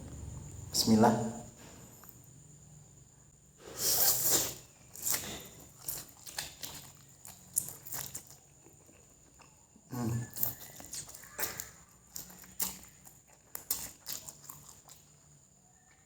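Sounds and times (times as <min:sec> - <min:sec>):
person slurping noodles: 0:03.6 - 0:05.2
chewing and mouth-smacking: 0:04.9 - 0:16.0.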